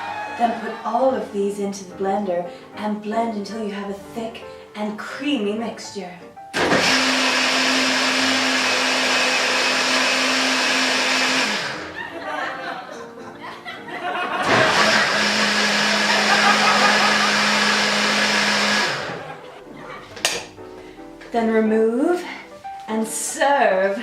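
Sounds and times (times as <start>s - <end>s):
electric blender running: 6.6s - 12.0s, 14.4s - 19.4s.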